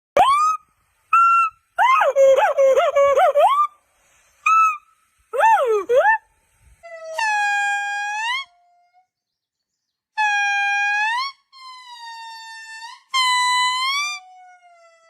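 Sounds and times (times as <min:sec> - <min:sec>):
monkey whistle-like calls: 0:00.2 - 0:03.8, 0:04.4 - 0:06.2.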